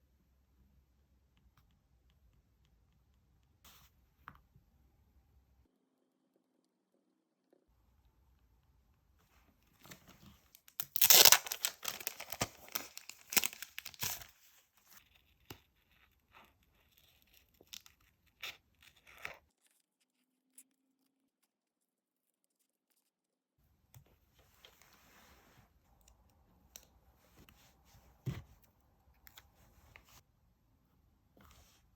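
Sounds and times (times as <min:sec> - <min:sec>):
paper rustling: 0:09.8 - 0:15.0
paper tearing: 0:10.8 - 0:14.3.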